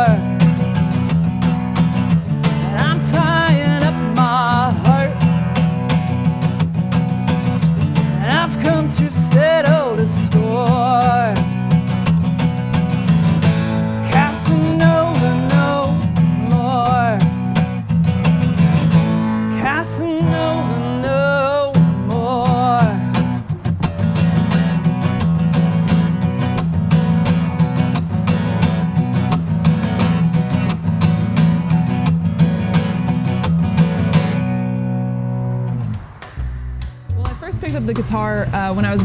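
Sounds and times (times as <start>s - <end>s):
person singing with vibrato: 0.0s - 0.4s, 2.4s - 5.6s, 8.0s - 11.5s, 14.0s - 17.4s, 19.5s - 23.2s
acoustic guitar strumming: 0.0s - 39.0s.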